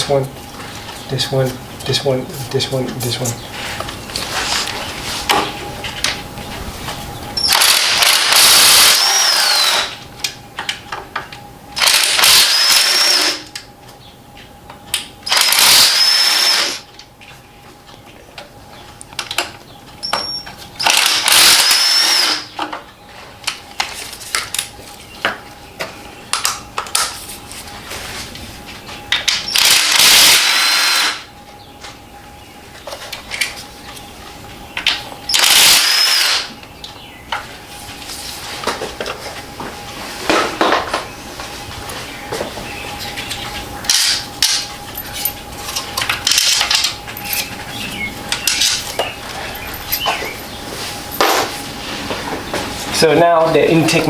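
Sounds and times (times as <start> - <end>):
cordless power tool whining: 7.4 - 10.0, 11.8 - 13.5, 15.2 - 16.9, 20.0 - 22.6, 29.4 - 31.3, 35.3 - 36.6.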